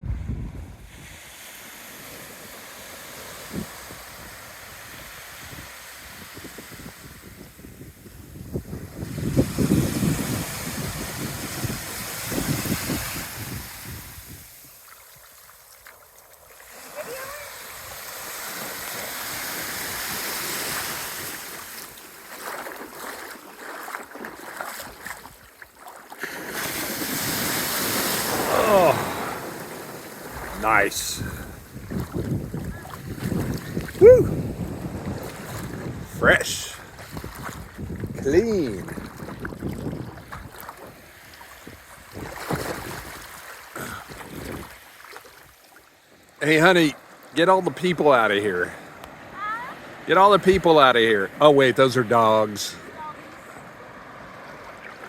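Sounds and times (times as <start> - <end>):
wind buffeting microphone: 0.0 - 1.2, 3.4 - 14.7, 28.2 - 43.3, 44.0 - 44.8
ocean surf: 0.0 - 15.0, 16.5 - 25.0, 25.8 - 37.0, 46.3 - 55.0.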